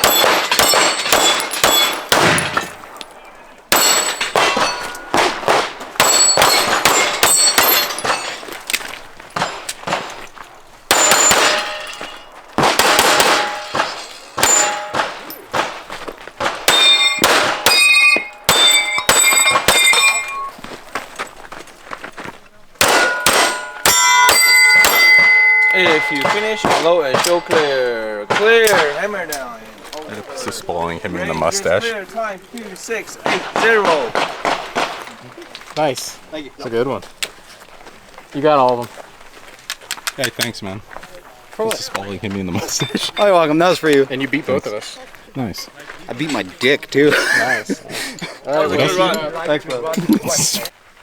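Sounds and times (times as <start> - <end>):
pistol shots: 0.0 - 3.0, 3.7 - 8.4, 9.4 - 10.2, 10.9 - 20.5, 22.8 - 29.2, 33.2 - 35.2
steel plate clanging: 0.0 - 3.0, 3.7 - 10.2, 10.9 - 15.8, 16.4 - 20.7, 22.8 - 29.5.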